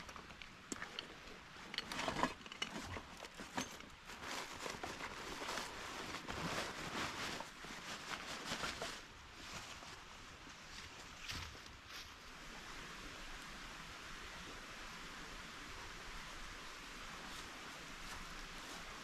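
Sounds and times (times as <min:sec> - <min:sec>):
dry leaves and twigs crackling: 0:01.8 - 0:12.2.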